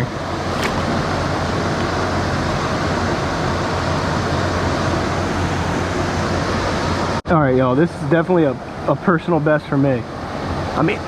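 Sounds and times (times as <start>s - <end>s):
creek water rushing: 0.0s - 2.6s.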